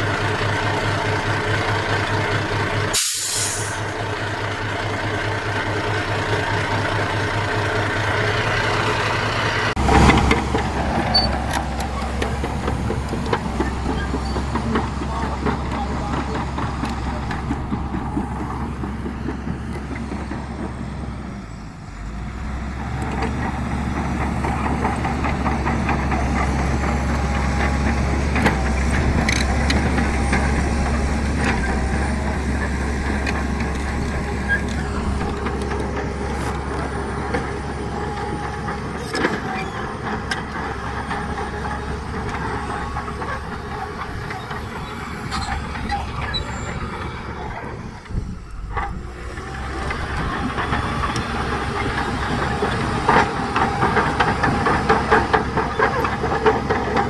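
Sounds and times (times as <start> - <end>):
heavy diesel machinery engine drone: 0.0 - 57.0.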